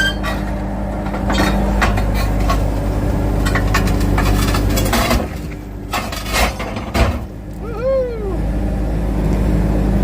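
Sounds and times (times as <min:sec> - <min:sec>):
loader engine running: 0:00.0 - 0:10.0
concrete and stones clattering: 0:03.4 - 0:07.2.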